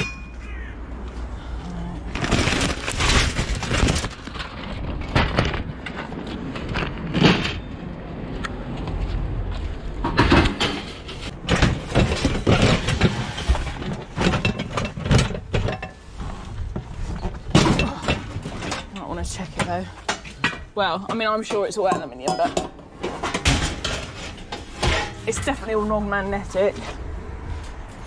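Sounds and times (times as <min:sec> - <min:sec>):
metal scrap clanking and rattling: 0:02.2 - 0:07.8, 0:10.0 - 0:16.3, 0:17.1 - 0:26.0.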